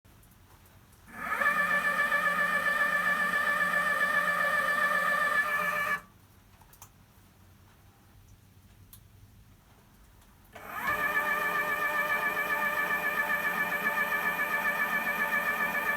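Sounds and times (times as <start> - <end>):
telescope motor whine: 1.1 - 6.0, 10.6 - 15.9.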